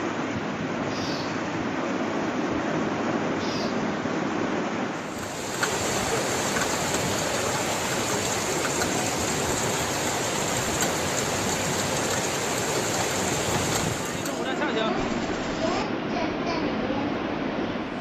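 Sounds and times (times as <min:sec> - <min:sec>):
floodwater rushing: 0:04.8 - 0:15.9.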